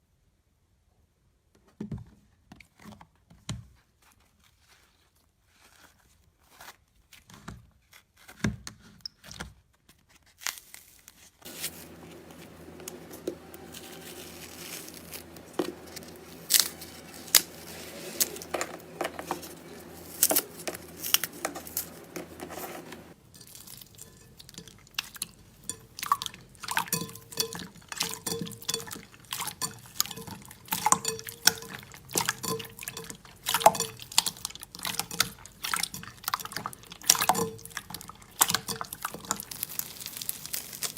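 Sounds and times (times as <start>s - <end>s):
slime squelching and popping: 26.0s - 40.9s.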